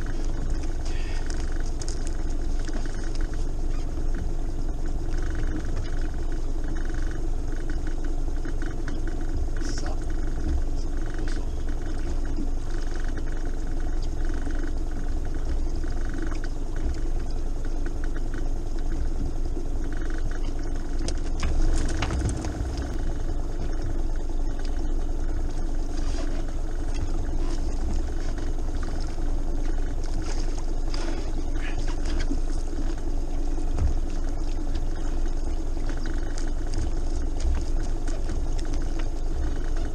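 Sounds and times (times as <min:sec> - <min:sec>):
boat engine running: 0:00.0 - 0:39.9.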